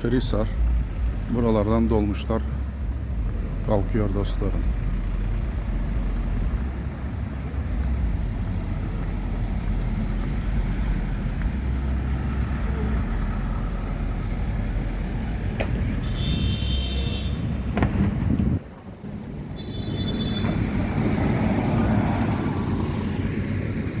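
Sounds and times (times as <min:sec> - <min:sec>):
traffic engines rumbling: 0:00.0 - 0:24.0
short hisses: 0:10.5 - 0:12.7.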